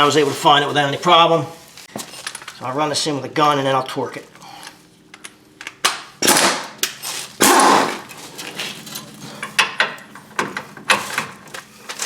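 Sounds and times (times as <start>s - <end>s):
impact gun hammering: 5.9s - 6.8s.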